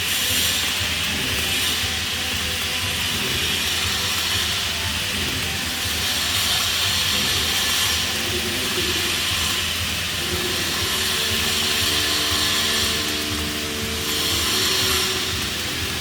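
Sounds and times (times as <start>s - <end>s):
welding arc crackling hiss: 0.0s - 16.0s.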